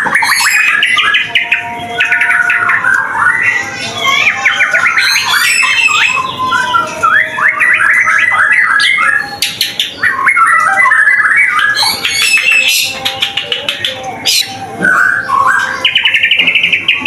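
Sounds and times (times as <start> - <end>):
bird singing whistled phrases: 0.0 - 17.0.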